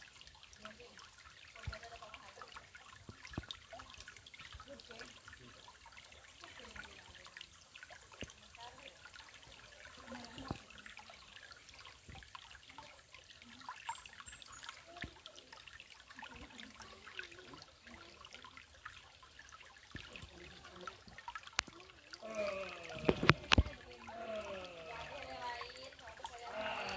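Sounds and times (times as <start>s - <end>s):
water trickling and dripping: 0.0s - 26.9s
person speaking: 22.2s - 25.6s.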